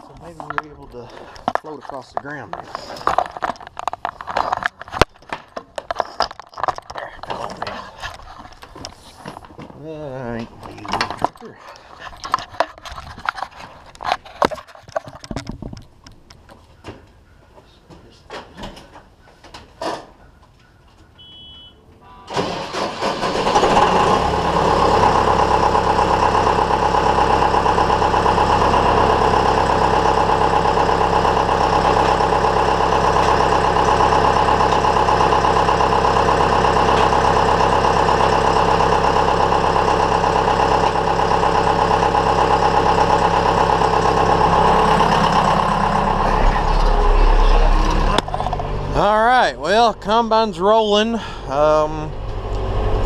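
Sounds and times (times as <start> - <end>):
short beep: 21.1 - 22.4
diesel engine starting and running: 22.2 - 53.0.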